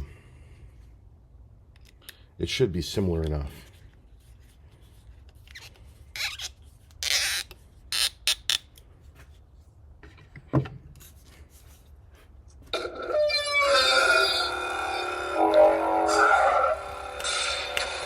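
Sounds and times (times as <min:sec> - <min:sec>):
lightsaber pitched sweeps and hum: 0:13.2 - 0:18.0.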